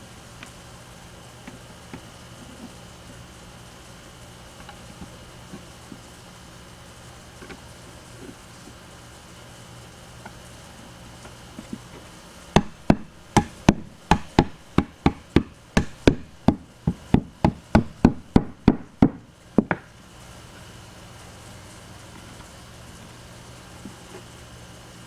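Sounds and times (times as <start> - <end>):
rubber mallet knocking wooden dowels: 12.6 - 19.9.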